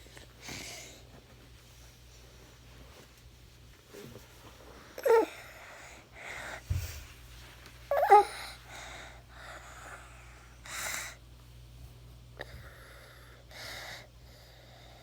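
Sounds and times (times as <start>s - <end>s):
child coughing: 5.0s - 5.4s, 7.9s - 8.4s
child breathing audibly: 5.1s - 7.2s, 8.1s - 11.2s, 12.4s - 15.0s.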